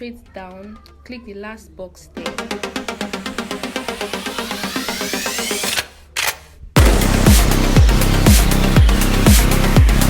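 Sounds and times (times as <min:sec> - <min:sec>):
electronic music with pulsing beat: 0:02.2 - 0:05.9, 0:06.8 - 0:10.0
rising synth sweep: 0:02.2 - 0:06.0, 0:06.8 - 0:10.0.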